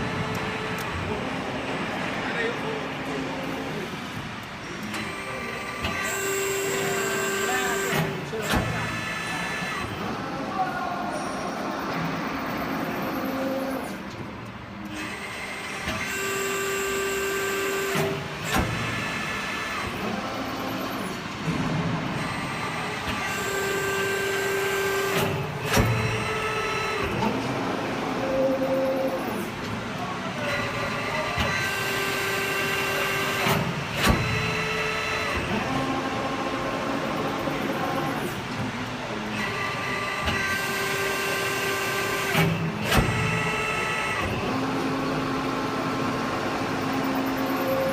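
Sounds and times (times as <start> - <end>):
whining motor tones: 4.8 - 10.5, 22.1 - 47.9
sharp clunk of a press: 17.9 - 18.9, 25.1 - 26.2, 33.4 - 34.5, 42.3 - 43.4.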